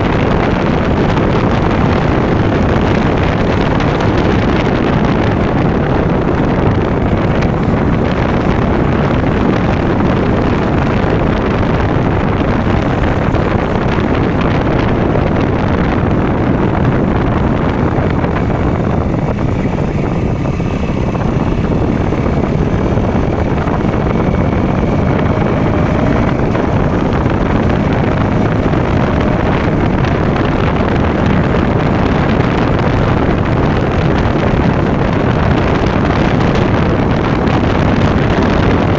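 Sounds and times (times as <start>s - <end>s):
motorcycle engine running: 0.0s - 38.9s
wind buffeting microphone: 0.0s - 38.9s.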